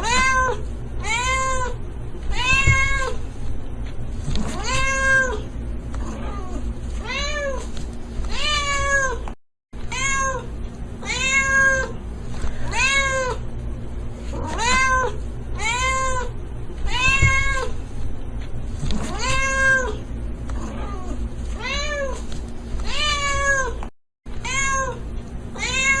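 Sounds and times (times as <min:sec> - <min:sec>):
cat meowing: 0:00.0 - 0:03.2, 0:04.5 - 0:05.4, 0:09.9 - 0:10.4, 0:11.0 - 0:11.9, 0:12.7 - 0:13.4, 0:14.4 - 0:16.3, 0:16.9 - 0:17.7, 0:19.1 - 0:20.0, 0:22.9 - 0:23.8, 0:24.4 - 0:25.0, 0:25.6 - 0:26.0.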